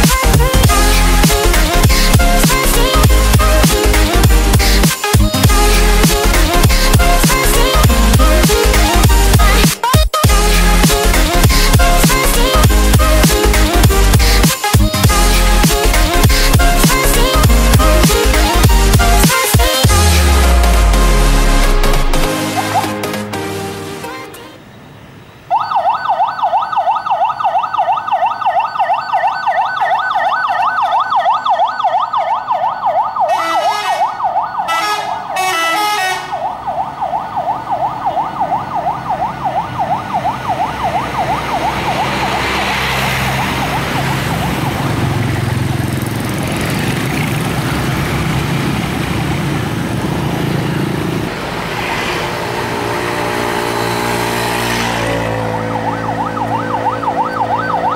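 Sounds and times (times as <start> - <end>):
police siren yelping: 25.5 - 46.0, 54.7 - 57.9
heavy vehicles rumbling past: 34.7 - 57.9.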